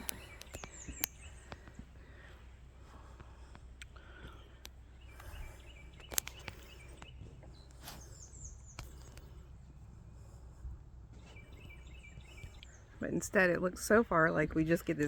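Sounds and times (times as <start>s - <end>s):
sharp clicks: 0.0s - 1.7s, 6.0s - 7.1s
faint bird chirps: 0.0s - 2.4s, 4.0s - 9.5s, 11.2s - 13.2s
steady low rumble: 0.0s - 15.0s.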